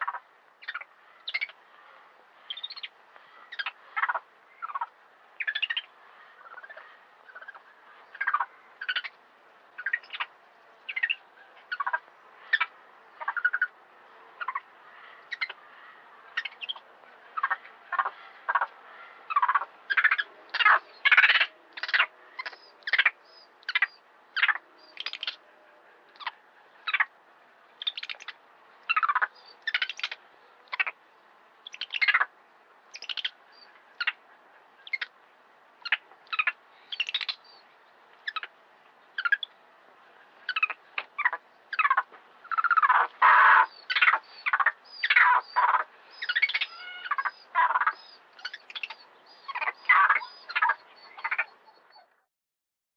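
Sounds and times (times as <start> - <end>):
monkey chirping and squeaking: 33.0 - 33.3, 35.8 - 37.4, 40.5 - 52.1.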